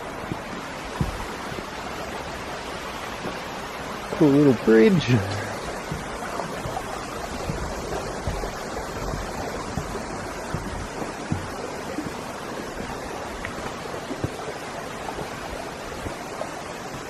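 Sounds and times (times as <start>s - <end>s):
river rushing: 0.0s - 17.0s
soft thumps: 0.2s - 1.6s, 5.3s - 14.5s.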